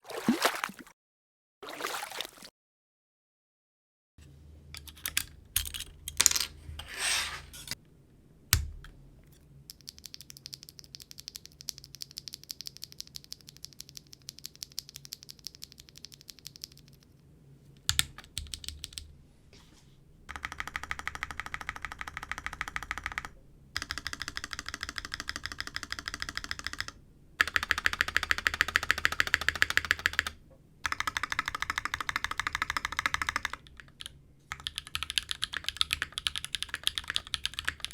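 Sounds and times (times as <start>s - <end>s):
larger keyboard keys clacking: 30.9s - 37.9s.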